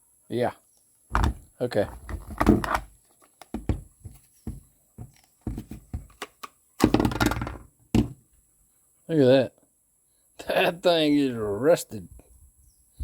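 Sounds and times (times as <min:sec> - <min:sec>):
pistol scraping in holster: 0:01.2 - 0:04.3.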